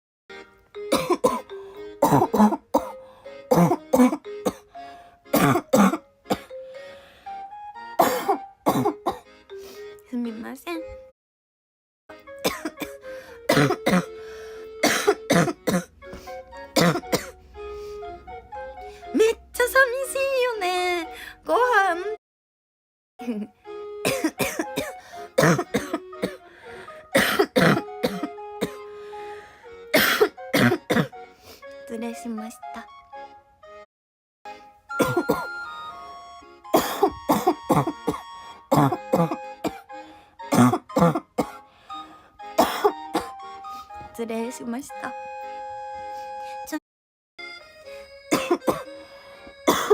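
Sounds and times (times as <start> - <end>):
background music: 0.3 - 11.1, 12.1 - 22.2, 23.2 - 33.8, 34.5 - 46.8, 47.4 - 49.9
woman coughing: 0.9 - 4.6, 5.3 - 6.5, 8.0 - 9.2, 12.4 - 14.1, 14.8 - 15.9, 16.8 - 17.3, 23.2 - 26.4, 27.2 - 28.8, 29.9 - 31.2, 35.0 - 35.5, 36.8 - 39.8, 40.5 - 41.6, 42.6 - 43.4, 48.3 - 48.9, 49.7 - 49.9.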